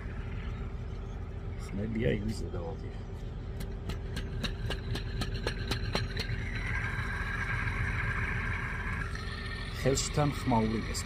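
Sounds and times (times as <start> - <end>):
pulley bearing ticking: 3.6 - 11.0
rough bearing whirring: 3.8 - 11.0.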